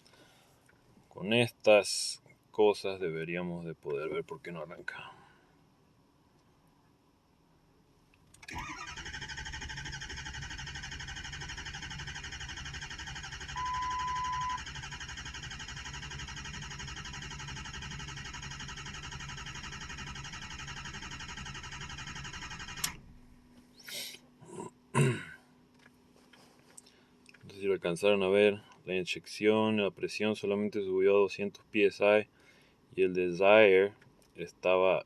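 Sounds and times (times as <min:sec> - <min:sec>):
diesel engine cranking: 0:08.3 - 0:23.3
beep: 0:13.6 - 0:14.6.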